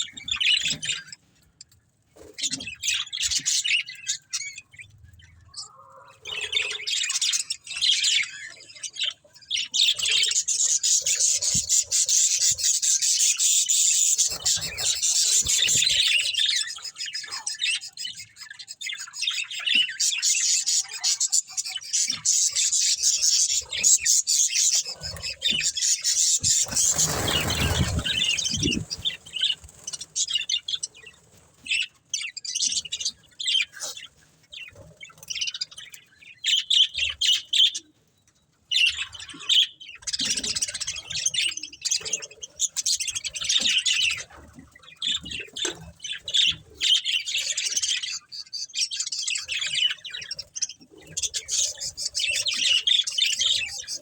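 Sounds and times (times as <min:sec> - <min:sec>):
budgerigars chirping: 0:05.7 - 0:30.8.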